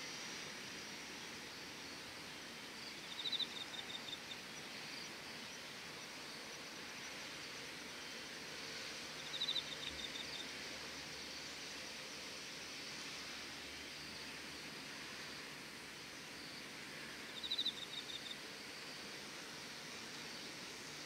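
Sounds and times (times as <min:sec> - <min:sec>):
soft outdoor hiss: 0:00.0 - 0:21.0
crickets chirring: 0:01.8 - 0:11.8, 0:16.1 - 0:20.9.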